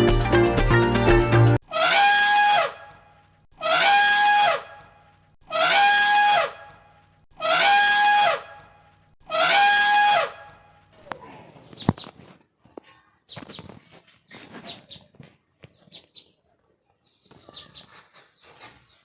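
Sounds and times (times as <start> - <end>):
animal trumpet-like call: 1.7 - 3.0, 3.6 - 4.8, 5.5 - 6.8, 7.4 - 8.7, 9.3 - 10.5.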